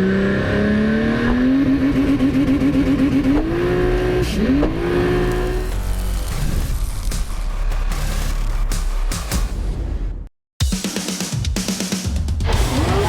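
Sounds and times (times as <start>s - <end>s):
race car engine revving: 0.0s - 6.4s, 12.4s - 13.0s.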